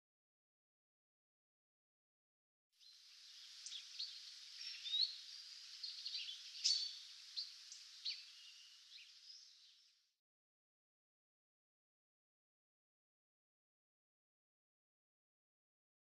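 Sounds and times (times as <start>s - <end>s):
small birds chirping: 2.8s - 10.1s
faint steady hiss: 2.8s - 10.2s.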